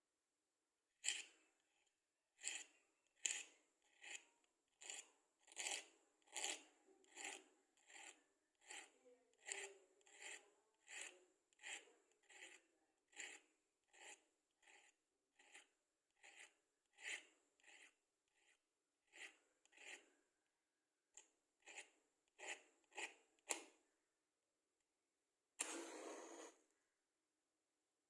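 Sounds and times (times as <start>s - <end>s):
matchsticks scratching: 25.6s - 26.6s.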